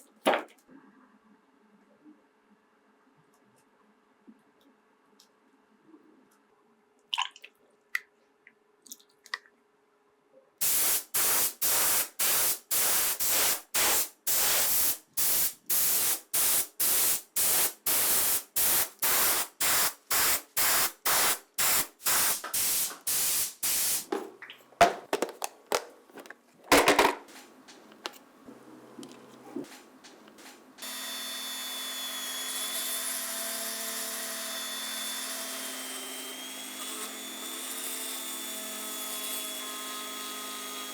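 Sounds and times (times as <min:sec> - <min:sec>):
spray hissing in bursts: 0:10.6 - 0:24.1
clicks and knocks: 0:24.1 - 0:28.2, 0:29.0 - 0:30.7.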